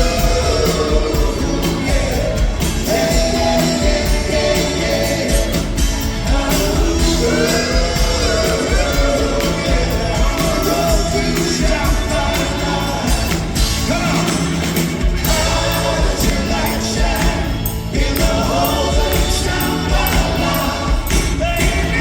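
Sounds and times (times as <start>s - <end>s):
group backing vocals: 0.0s - 22.0s
rock band playing live: 0.0s - 22.0s
steady drum beat: 0.0s - 22.0s
person singing lead: 15.2s - 22.0s.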